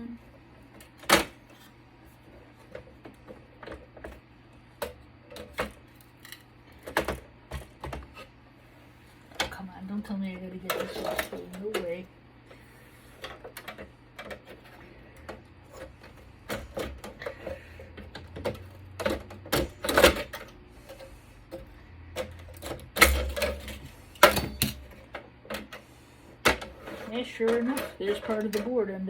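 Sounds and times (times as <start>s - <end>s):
clicks and clatter of handled parts: 4.8s - 8.3s.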